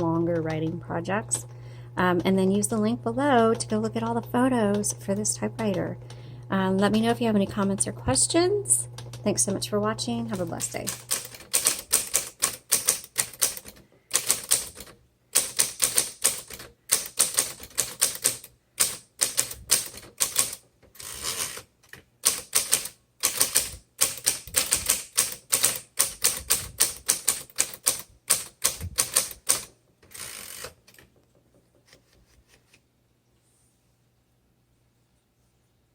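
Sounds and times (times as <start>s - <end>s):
steady low hum: 0.0s - 12.2s
electric typewriter keystrokes: 0.0s - 31.2s.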